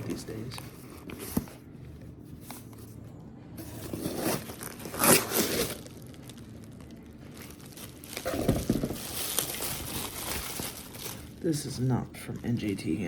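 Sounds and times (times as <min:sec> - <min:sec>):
packaging tearing and crinkling: 0:03.7 - 0:11.4.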